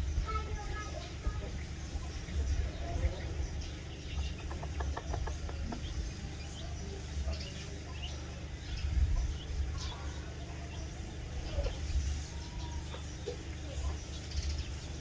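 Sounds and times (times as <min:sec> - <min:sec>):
chicks peeping: 0:00.0 - 0:15.0
hen clucking: 0:02.6 - 0:08.5.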